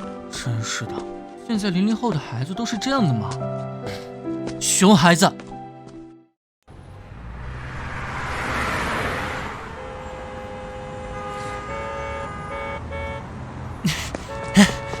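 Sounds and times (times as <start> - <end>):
passing whoosh: 6.9 - 9.8
tooting horn-like tones: 13.9 - 15.0.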